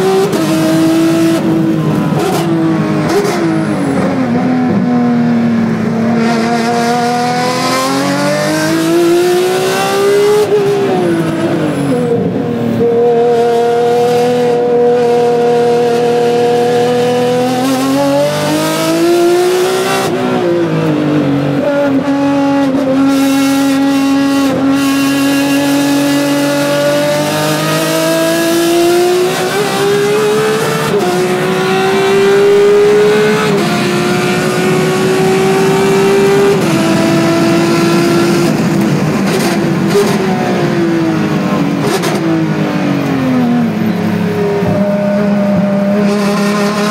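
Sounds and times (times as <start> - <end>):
race car engine at high revs: 0.0 - 46.9.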